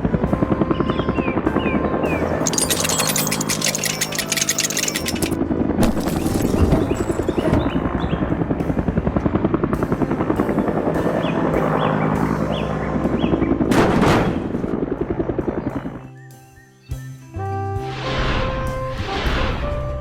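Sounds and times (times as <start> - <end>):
background music: 14.7 - 20.0.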